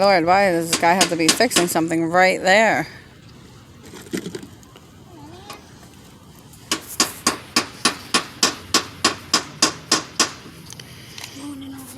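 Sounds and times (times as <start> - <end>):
hammer striking: 6.7 - 10.5.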